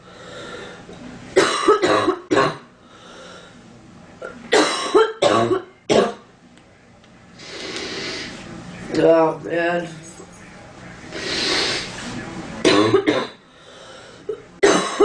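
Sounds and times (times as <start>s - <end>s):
girl coughing: 1.4s - 2.6s, 4.6s - 6.2s, 12.7s - 13.4s, 14.6s - 15.0s.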